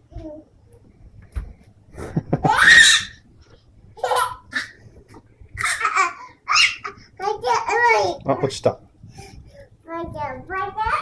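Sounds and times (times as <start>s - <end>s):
young child laughing: 2.0s - 3.2s, 4.0s - 4.8s, 5.6s - 7.0s.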